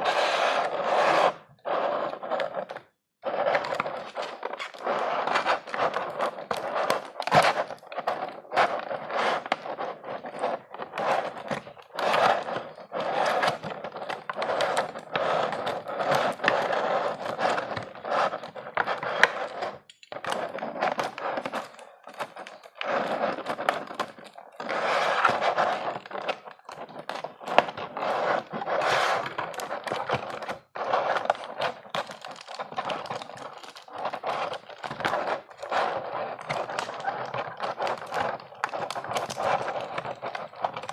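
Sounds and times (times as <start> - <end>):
small clicks and knocks: 19.8 - 20.2
plastic packaging crinkling: 25.3 - 40.9.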